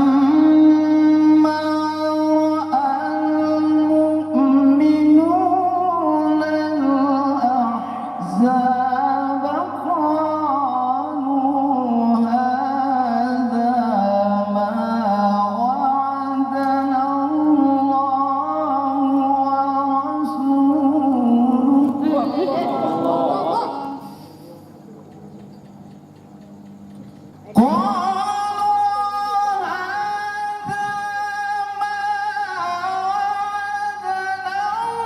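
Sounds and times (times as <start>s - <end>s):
man chanting melodically: 0.0s - 24.5s, 27.5s - 35.0s.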